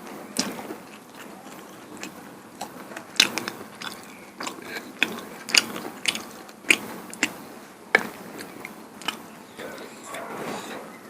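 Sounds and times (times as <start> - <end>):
close-miked chewing: 0.0 - 11.0
crunching clicks: 8.0 - 9.2.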